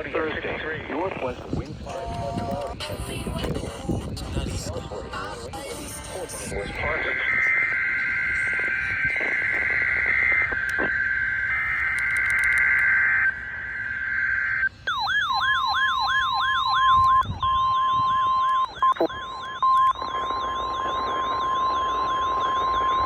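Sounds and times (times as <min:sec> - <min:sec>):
radio static: 0:00.0 - 0:14.7, 0:16.9 - 0:23.0
steady single-pitch alert tone: 0:06.5 - 0:23.0
warbling digital chirps: 0:06.5 - 0:23.0.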